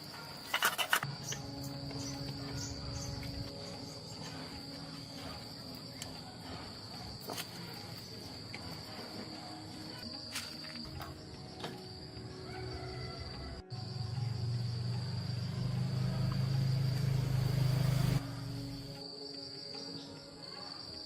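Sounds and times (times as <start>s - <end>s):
insects trilling: 0.0s - 21.0s
low rumble: 1.4s - 5.1s.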